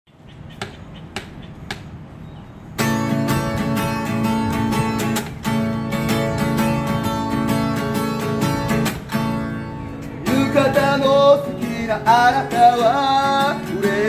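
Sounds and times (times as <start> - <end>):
acoustic guitar strumming: 2.8 - 14.0.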